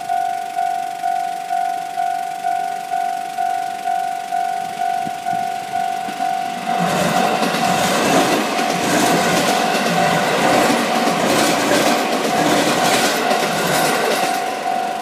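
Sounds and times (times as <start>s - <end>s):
level crossing warning bell: 0.0s - 15.0s
train wheels clattering over rail joints: 6.0s - 15.0s.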